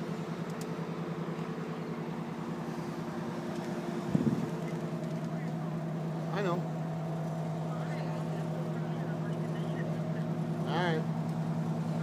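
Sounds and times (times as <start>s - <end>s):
truck engine and hydraulics running: 0.0s - 12.0s.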